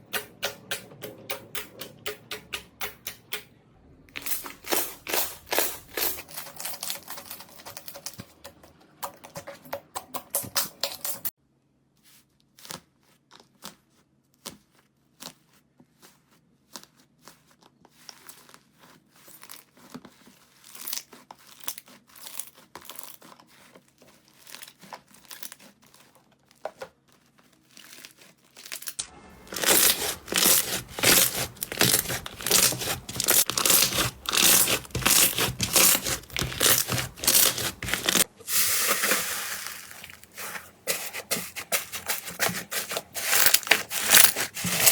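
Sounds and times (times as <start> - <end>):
slime crackling and popping: 4.2 - 8.2, 27.6 - 38.3.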